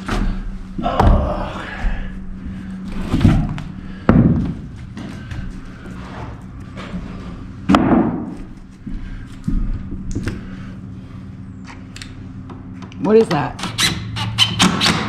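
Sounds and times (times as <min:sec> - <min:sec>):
heavy thuds on wood framing: 0:00.0 - 0:05.8, 0:06.8 - 0:10.6
steady low hum: 0:00.0 - 0:15.0.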